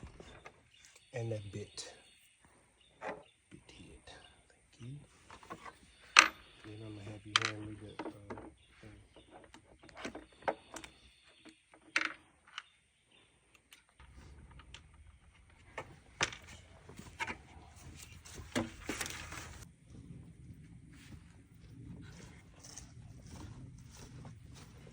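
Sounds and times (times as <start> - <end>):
small hardware and tools rattling: 13.6 - 19.6.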